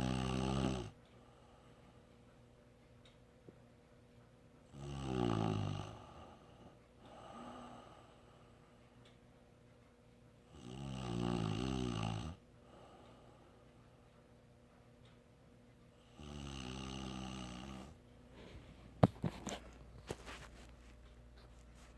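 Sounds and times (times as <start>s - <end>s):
loud rattling snores: 0.0s - 1.0s, 4.8s - 6.1s, 10.5s - 12.4s, 16.1s - 18.0s
soft breath: 1.2s - 2.2s, 6.0s - 9.2s, 12.6s - 14.2s, 17.8s - 21.9s.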